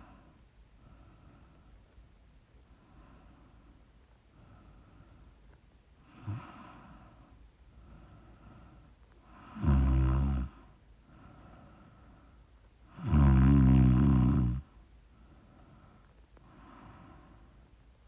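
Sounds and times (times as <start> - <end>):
quiet breathing: 0.0 - 13.3, 14.1 - 18.0
person snoring: 9.4 - 10.6, 13.0 - 14.6.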